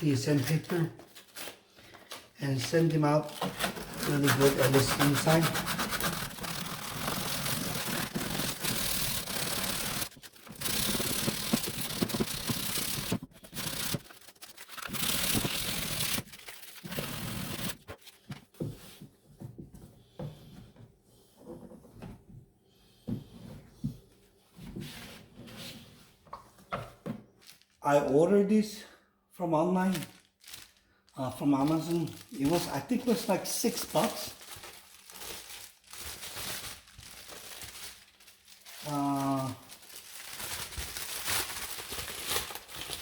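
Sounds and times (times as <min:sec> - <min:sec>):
hand sanding with sandpaper: 0:03.8 - 0:17.8.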